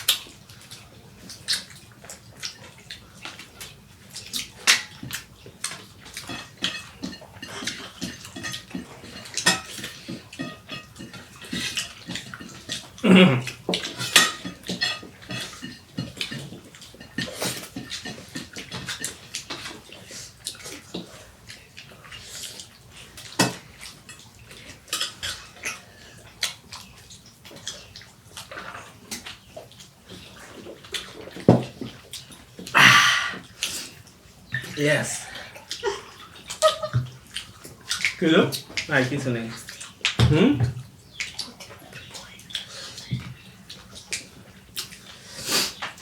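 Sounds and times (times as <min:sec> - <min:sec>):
wet chewing: 0:00.0 - 0:38.9, 0:41.1 - 0:46.0
cutlery clinking on dishes: 0:04.2 - 0:13.0, 0:13.6 - 0:20.0, 0:23.2 - 0:25.9
throat sound: 0:13.0 - 0:13.6, 0:32.8 - 0:33.5.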